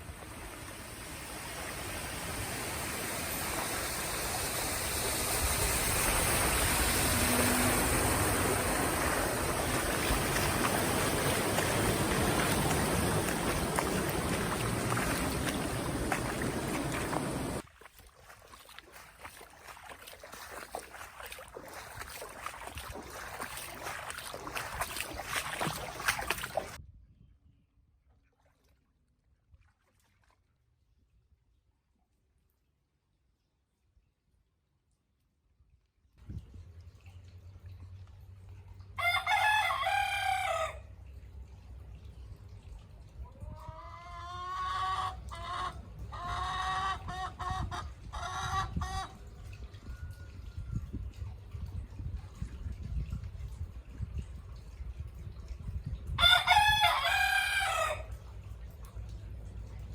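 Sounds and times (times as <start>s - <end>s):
floodwater rushing: 0.0s - 26.8s, 56.2s - 59.9s.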